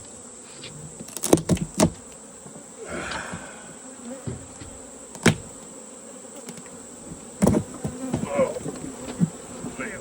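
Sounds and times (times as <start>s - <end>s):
honeybees buzzing: 0.0s - 10.0s
sharp knocks: 4.2s - 5.5s.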